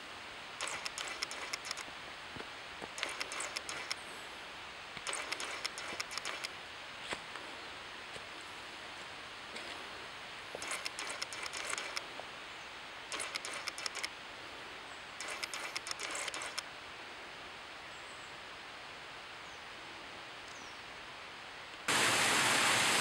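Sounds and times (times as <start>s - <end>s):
distant falling water: 0.0s - 23.0s
footsteps crunching on trail: 8.1s - 9.9s.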